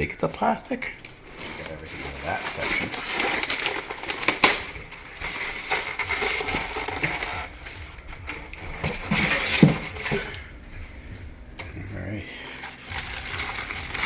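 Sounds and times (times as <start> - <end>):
packaging crinkling: 0.4 - 14.0
plastic parts clicking: 0.9 - 10.6, 12.5 - 14.0.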